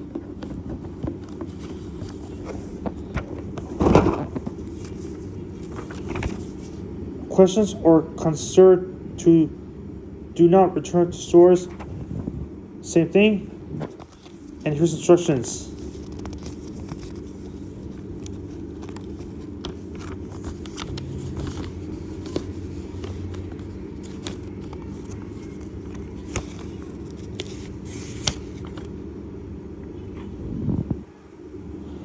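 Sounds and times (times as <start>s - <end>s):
paper rustling: 0.0s - 6.8s, 13.8s - 29.0s
steady low hum: 0.0s - 32.0s.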